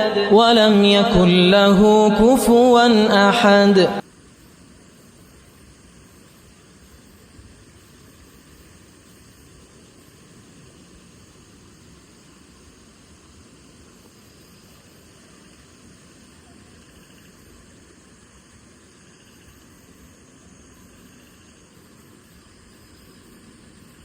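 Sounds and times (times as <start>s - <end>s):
low even hiss: 0.0s - 24.0s
faint insect chirring: 2.5s - 24.0s.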